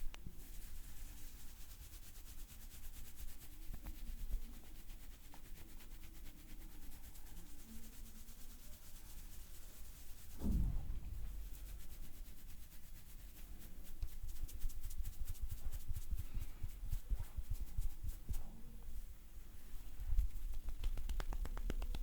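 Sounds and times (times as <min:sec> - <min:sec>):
hands rubbing and massaging: 0:11.0 - 0:18.6, 0:19.6 - 0:22.0.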